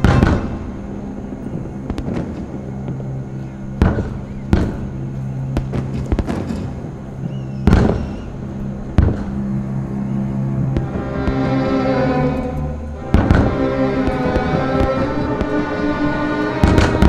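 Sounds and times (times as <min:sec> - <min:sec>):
fireworks bursting with crackles: 0:00.0 - 0:08.4, 0:09.0 - 0:09.5, 0:13.0 - 0:17.0
background music with low notes: 0:00.0 - 0:17.0.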